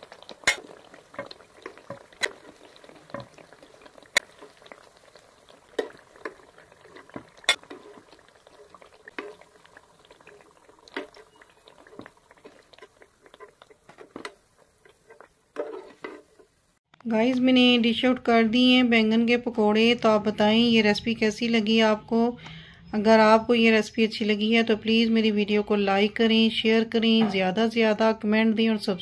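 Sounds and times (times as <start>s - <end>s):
hot oil bubbling in a pan: 0.0s - 16.8s.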